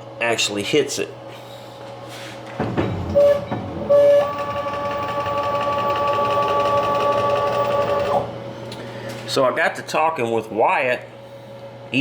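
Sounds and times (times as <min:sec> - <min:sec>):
stepper motor whine: 0:03.0 - 0:08.4.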